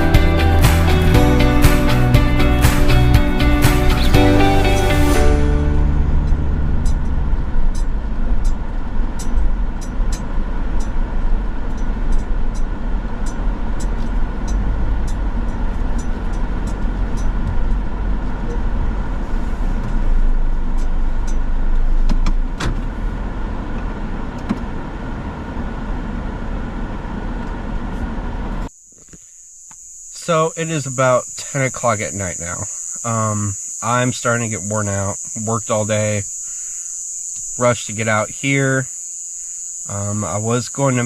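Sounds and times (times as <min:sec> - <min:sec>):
car engine rumble: 0:00.0 - 0:29.2.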